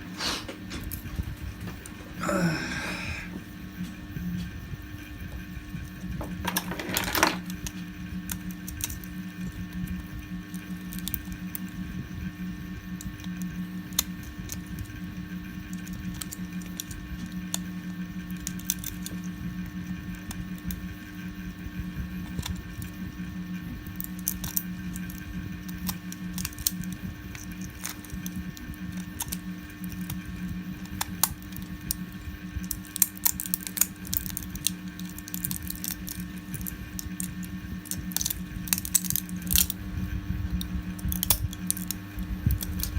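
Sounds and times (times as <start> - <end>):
low machine hum: 0.0 - 42.9
plastic pieces clinking: 6.3 - 7.5
plastic clicks and snaps: 40.5 - 42.9.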